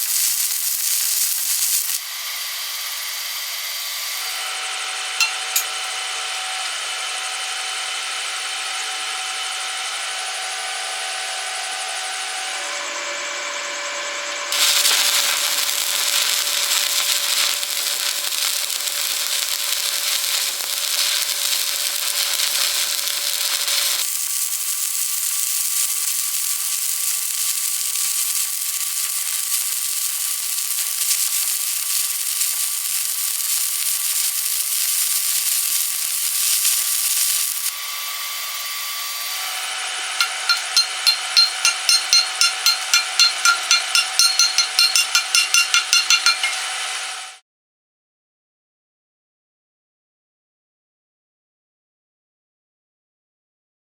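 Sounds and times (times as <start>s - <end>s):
welding arc crackling: 0.0s - 6.0s, 14.5s - 38.0s, 40.2s - 47.3s
steady hum: 40.2s - 47.3s.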